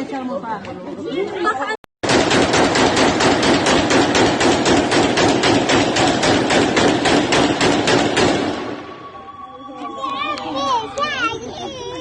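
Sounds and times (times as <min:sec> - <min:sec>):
rapid automatic gunfire: 0:02.0 - 0:08.8.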